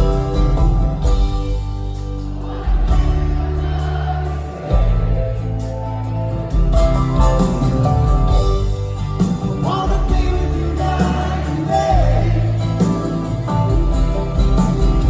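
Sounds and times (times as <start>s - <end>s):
live band playing rock ballad: 0.0s - 15.0s
person singing: 9.6s - 15.0s.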